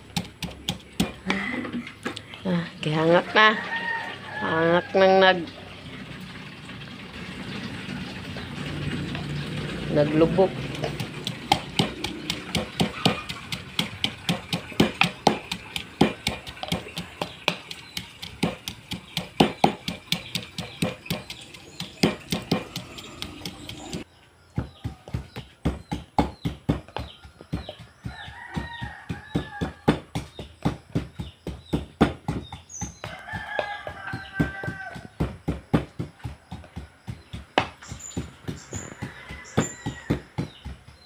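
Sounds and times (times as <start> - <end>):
pestle pounding in a mortar: 0.0 - 2.0, 7.4 - 41.0
rooster crowing: 3.2 - 5.1, 27.6 - 30.0, 33.0 - 35.1, 38.7 - 40.5.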